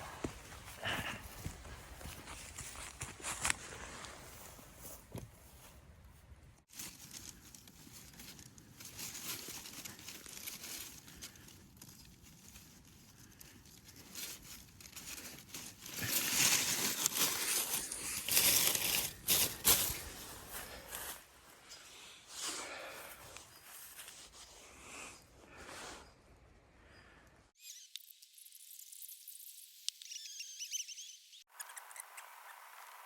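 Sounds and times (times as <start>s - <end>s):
dry leaves rustling: 6.7s - 21.5s.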